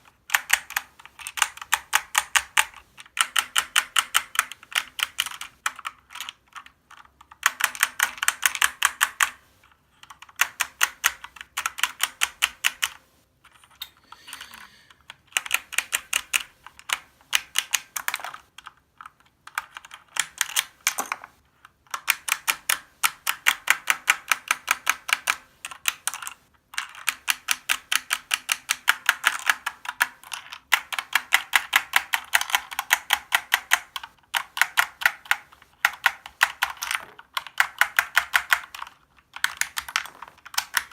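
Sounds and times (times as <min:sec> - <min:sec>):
mechanical keyboard clacking: 0:00.0 - 0:09.4, 0:10.0 - 0:13.0, 0:15.1 - 0:21.2, 0:21.9 - 0:40.9.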